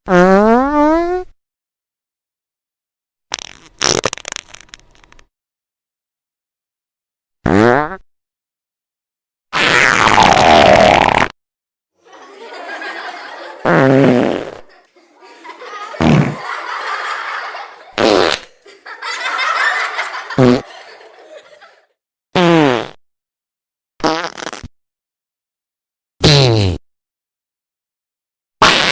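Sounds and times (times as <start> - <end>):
fart sound effects: 3.3 - 4.8, 7.4 - 8.0, 9.6 - 11.3, 13.6 - 14.6, 18.0 - 18.5, 22.4 - 23.0, 24.0 - 24.7, 28.6 - 28.9
laughter: 12.0 - 21.9.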